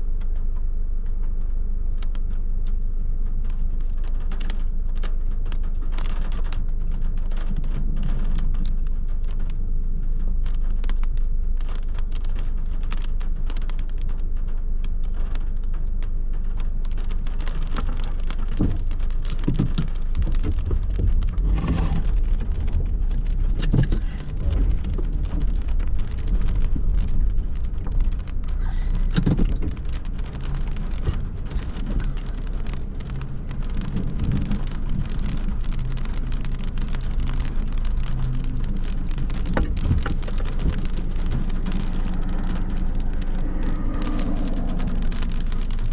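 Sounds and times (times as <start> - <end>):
heavy rain patter: 0.0 - 45.9
low thunder rumble: 17.2 - 45.9.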